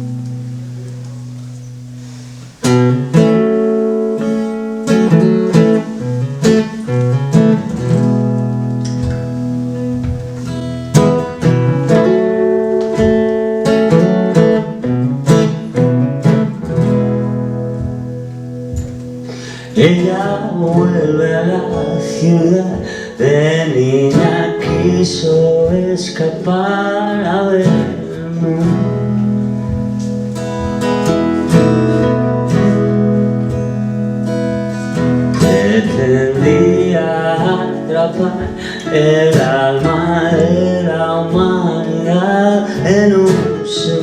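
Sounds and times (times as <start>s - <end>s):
acoustic guitar strumming chords: 0.0s - 44.0s.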